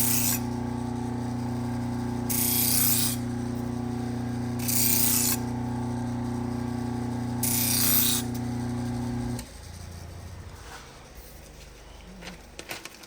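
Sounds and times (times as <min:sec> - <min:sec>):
knife blade hissing on sharpener: 0:00.0 - 0:00.5, 0:02.3 - 0:03.3, 0:04.6 - 0:05.5, 0:07.4 - 0:08.4
sharpening machine motor humming: 0:00.0 - 0:10.6.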